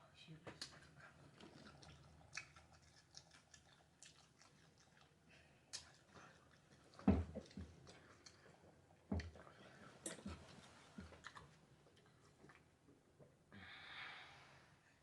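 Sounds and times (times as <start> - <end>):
person chewing: 1.4 - 8.6, 10.1 - 12.6.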